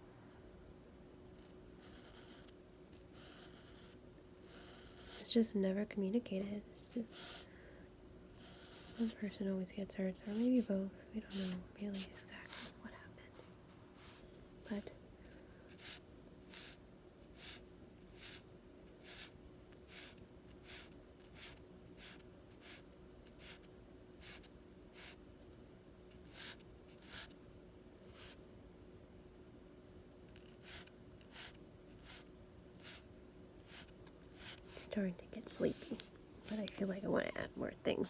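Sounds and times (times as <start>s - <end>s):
faint steady hum: 0.0s - 38.0s
pencil strokes scratching on paper: 1.4s - 5.3s, 7.0s - 7.5s, 8.4s - 9.4s, 10.1s - 14.9s, 30.4s - 33.0s, 33.6s - 38.0s.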